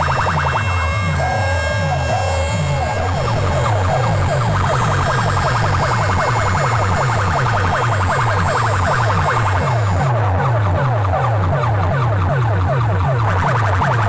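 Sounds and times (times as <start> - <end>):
dance music with heavy bass beat: 0.0 - 10.1
siren-like falling sweep: 0.0 - 10.2.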